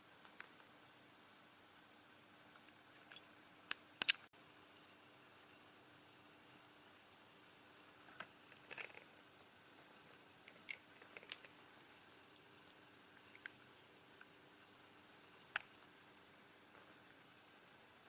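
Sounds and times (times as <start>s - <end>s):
faint clicks and taps: 0.2s - 0.8s.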